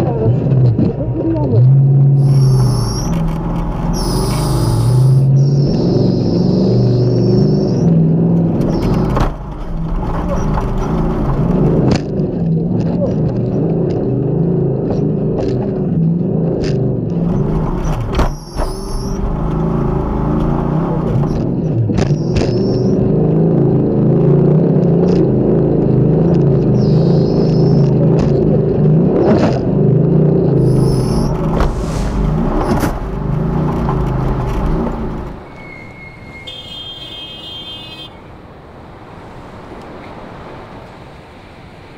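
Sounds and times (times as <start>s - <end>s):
car engine running hard: 0.0s - 35.5s
high wavering tone: 2.2s - 3.2s
car rattling over rough ground: 2.2s - 5.7s, 8.4s - 23.0s, 30.6s - 36.5s.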